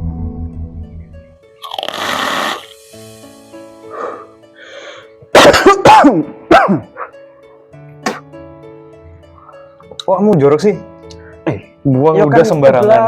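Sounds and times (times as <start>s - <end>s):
raspy throat-clearing: 1.6s - 2.8s, 8.0s - 8.3s
person coughing harshly: 5.3s - 7.0s, 8.0s - 8.3s.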